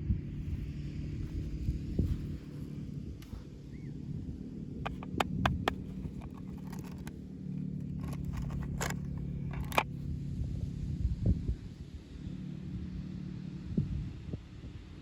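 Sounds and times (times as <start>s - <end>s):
steady low hum: 0.0s - 13.2s
toy packaging being opened: 4.9s - 7.1s, 7.9s - 9.8s.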